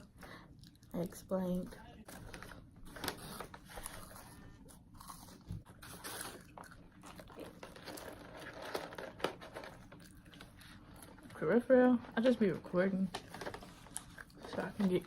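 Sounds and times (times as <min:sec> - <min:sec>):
person chewing food: 0:03.9 - 0:08.1.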